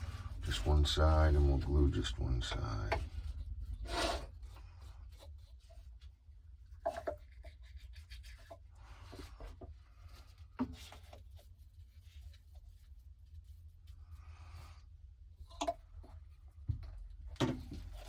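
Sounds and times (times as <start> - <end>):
plastic pipe rubbing and scraping: 0.0 - 13.6, 15.4 - 18.0.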